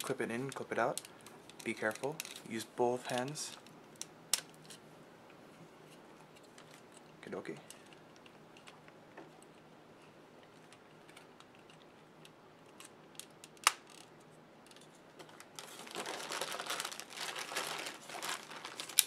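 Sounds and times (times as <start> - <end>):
plastic wrapping crinkling: 14.7 - 19.0.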